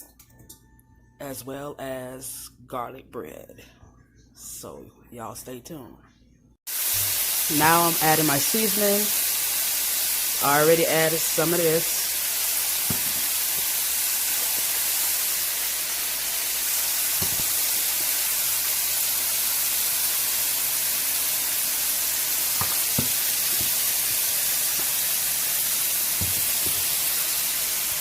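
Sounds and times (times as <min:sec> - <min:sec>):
chicken frying sizzle: 0:06.7 - 0:28.0.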